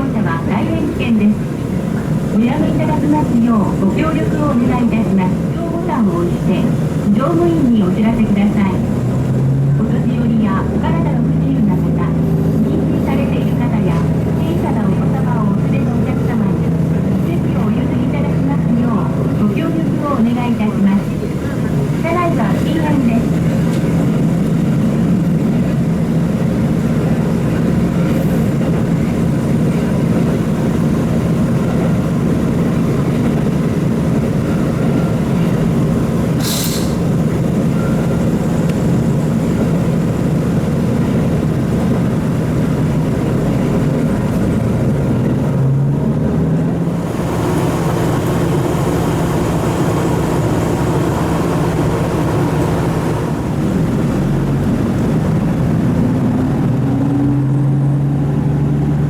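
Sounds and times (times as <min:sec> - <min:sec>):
diesel engine drone: 0:00.0 - 0:59.0
wheel and track noise: 0:08.1 - 0:59.0
high hiss: 0:36.4 - 0:37.1.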